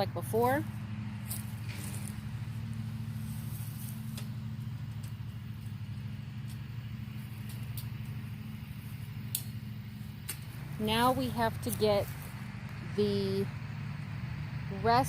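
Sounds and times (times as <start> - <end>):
low motor hum: 0.0 - 15.0
light sharp clicks: 9.3 - 9.6.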